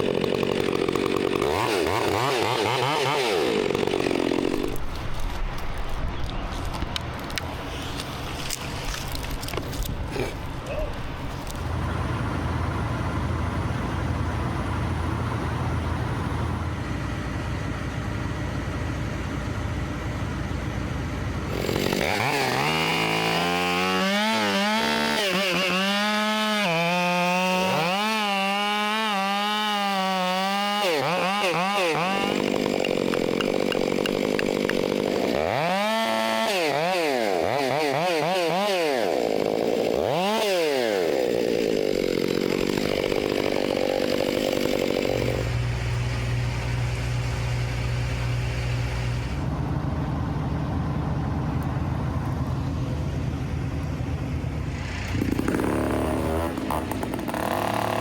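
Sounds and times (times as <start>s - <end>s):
chainsaw revving cutting wood: 0.0s - 5.0s, 21.5s - 49.4s, 54.6s - 58.0s
low engine rumble: 4.8s - 21.5s, 45.4s - 57.1s.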